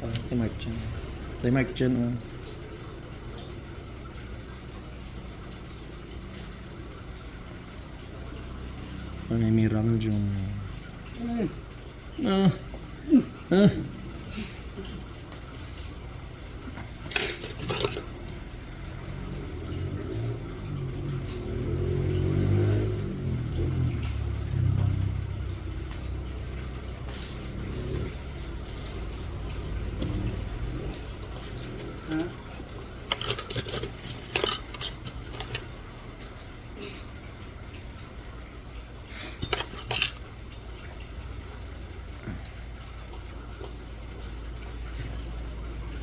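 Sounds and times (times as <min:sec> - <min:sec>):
metal nail tools clinking: 0:17.1 - 0:18.1, 0:31.4 - 0:32.3, 0:33.1 - 0:35.6, 0:39.4 - 0:40.4.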